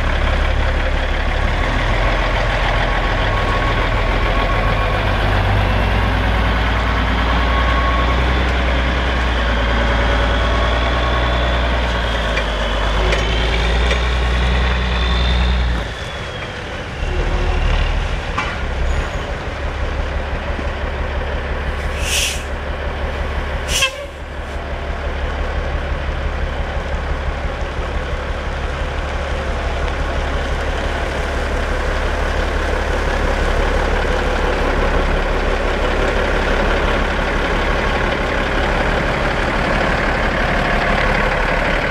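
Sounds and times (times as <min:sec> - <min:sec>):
rising engine whine: 0:00.0 - 0:21.9
diesel truck engine running: 0:00.0 - 0:41.9
air hissing: 0:21.8 - 0:22.5.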